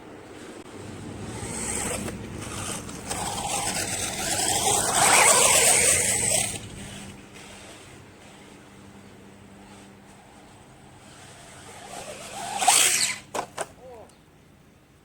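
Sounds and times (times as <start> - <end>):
tyres rushing on dirt: 0.0 - 13.6
electric motor whine: 0.8 - 8.7.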